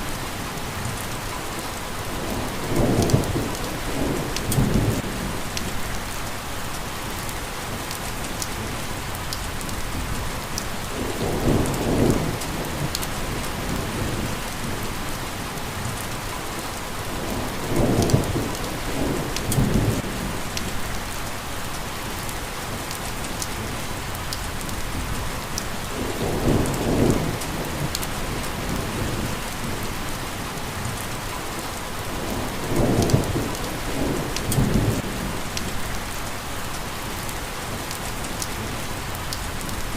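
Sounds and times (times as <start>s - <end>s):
rain hiss: 0.0s - 39.9s
rain drop ticks: 2.9s - 4.9s, 5.5s - 6.4s, 7.2s - 10.8s, 11.7s - 13.8s, 17.8s - 21.4s, 32.8s - 36.4s.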